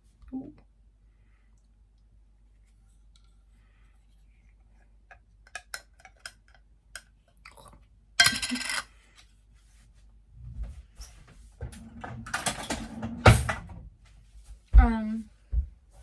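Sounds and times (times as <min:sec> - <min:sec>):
metal kitchenware clinking: 0:08.2 - 0:08.8.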